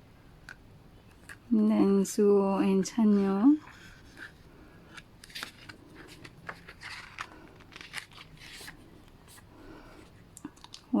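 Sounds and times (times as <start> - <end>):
paper rustles: 3.1 - 9.4
pages turning: 3.1 - 9.5.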